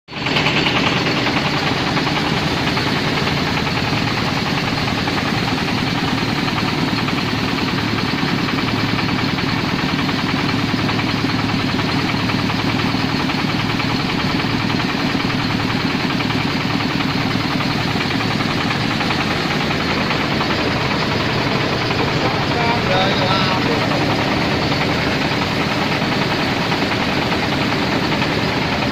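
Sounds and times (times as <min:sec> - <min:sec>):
rice mill running: 0:00.1 - 0:28.9.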